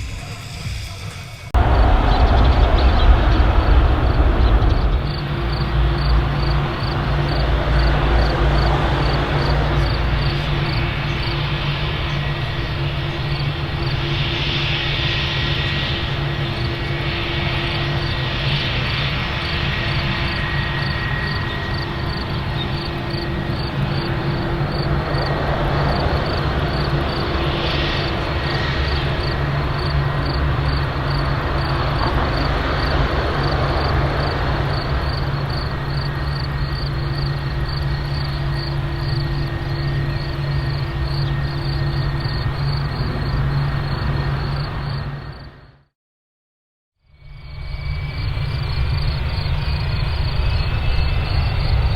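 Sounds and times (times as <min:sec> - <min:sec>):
airplane engines droning: 0:00.0 - 0:45.9, 0:47.1 - 0:51.9.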